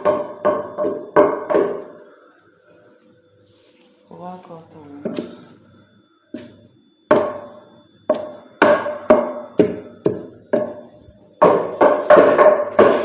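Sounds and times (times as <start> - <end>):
hollow wooden knocks: 11.4 - 13.0.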